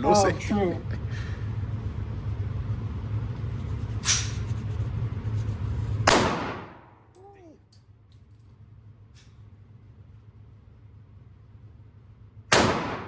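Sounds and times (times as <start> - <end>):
pistol shots: 6.1 - 6.9, 12.5 - 13.0.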